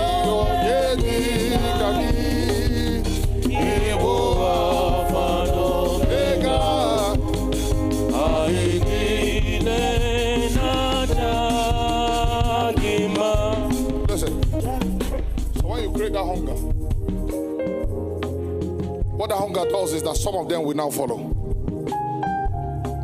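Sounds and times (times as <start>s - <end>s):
person singing gospel: 0.0s - 16.8s
steady bass: 0.0s - 19.2s.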